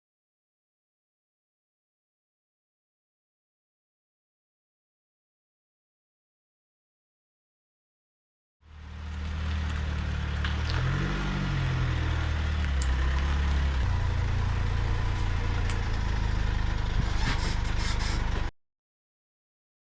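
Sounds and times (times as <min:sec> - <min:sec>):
engine idling hum: 0:08.6 - 0:18.5.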